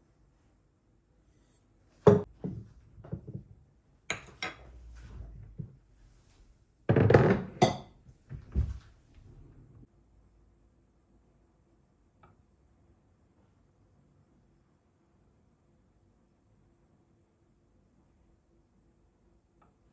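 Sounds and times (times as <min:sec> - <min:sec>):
dishes and utensils clinking: 0:04.1 - 0:04.9.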